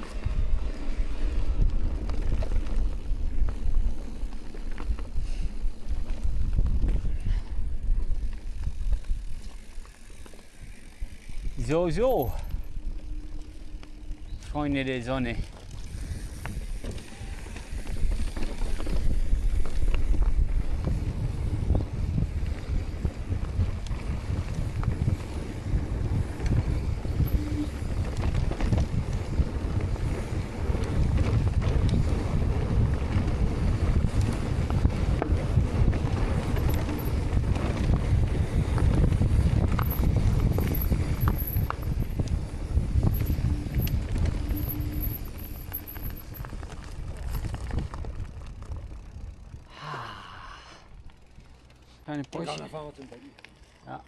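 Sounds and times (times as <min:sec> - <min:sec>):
tyres rumbling on dirt trail: 0:00.0 - 0:54.0
bike knocks and rattles: 0:15.5 - 0:49.6
wind on microphone: 0:15.7 - 0:49.7.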